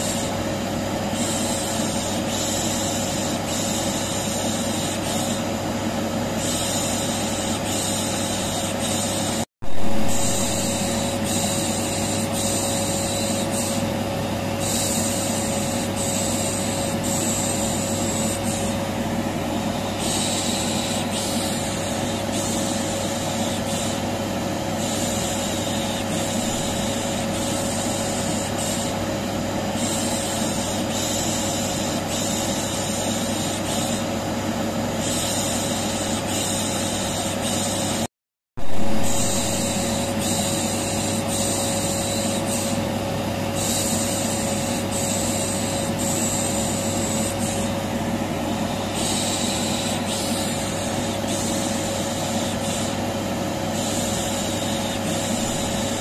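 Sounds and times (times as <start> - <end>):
vacuum cleaner humming: 3.7 - 30.8, 38.6 - 56.0.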